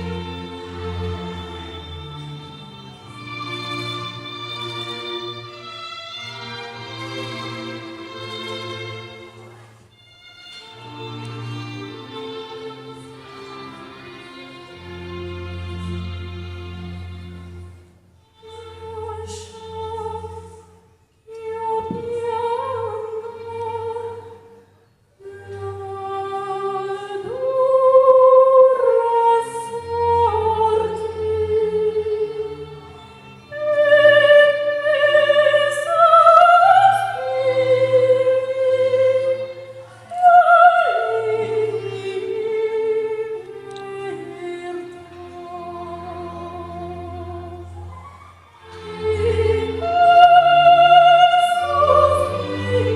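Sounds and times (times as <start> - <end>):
operatic soprano singing: 18.4 - 24.6, 25.2 - 52.9.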